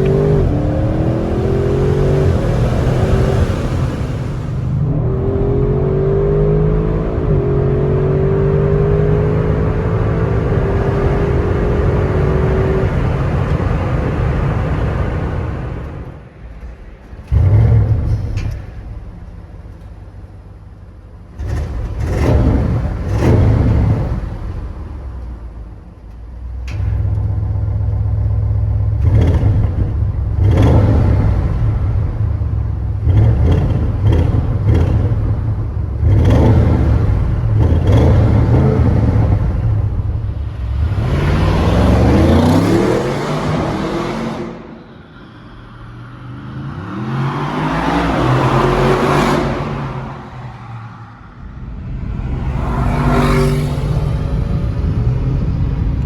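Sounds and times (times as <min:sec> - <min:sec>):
exhaust crackles: 0:00.0 - 0:05.7, 0:09.5 - 0:44.9
car engine rumble: 0:00.0 - 0:56.0.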